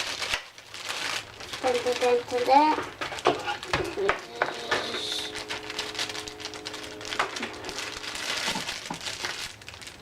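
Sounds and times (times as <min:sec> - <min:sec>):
faint steady hum: 0:00.0 - 0:10.0
food packaging crinkling: 0:00.0 - 0:10.0.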